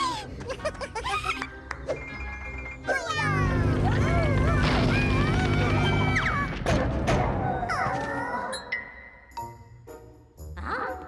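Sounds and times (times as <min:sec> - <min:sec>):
cartoon background music: 0:00.0 - 0:11.0
squeaky character vocalisations: 0:02.8 - 0:06.4.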